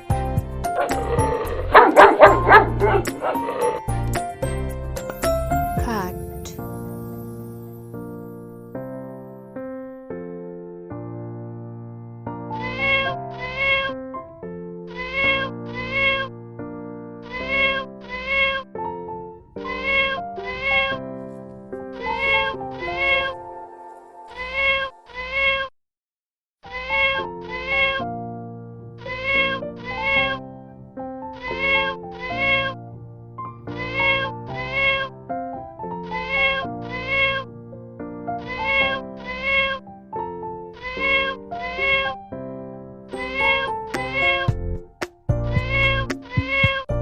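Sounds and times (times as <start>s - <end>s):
background music: 0.0s - 25.2s, 26.7s - 47.0s
cat meowing: 12.6s - 14.0s, 14.9s - 16.3s, 17.2s - 18.8s, 19.6s - 21.0s, 22.0s - 23.4s, 24.3s - 25.7s, 26.6s - 28.1s, 29.0s - 30.5s, 31.4s - 32.8s, 33.7s - 35.1s, 36.0s - 37.5s, 38.4s - 39.8s, 40.7s - 42.2s, 43.2s - 44.6s, 45.5s - 46.9s.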